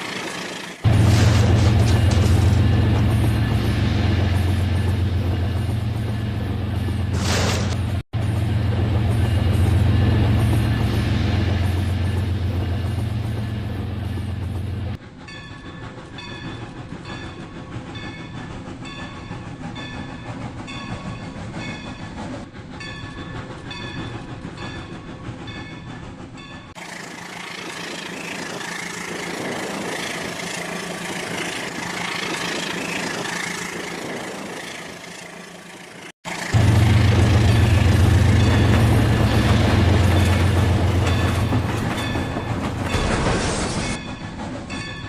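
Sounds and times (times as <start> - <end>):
toy train running on track: 26.7 - 36.6.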